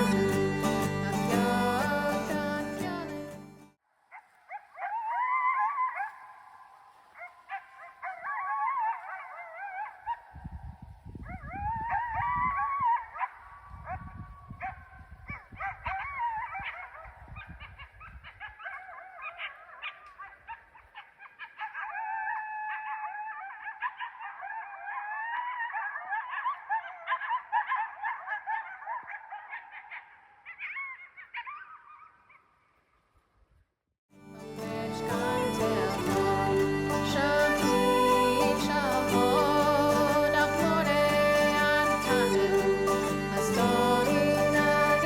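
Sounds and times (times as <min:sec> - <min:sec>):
chorus of animal cries and honks: 0:34.9 - 0:45.0.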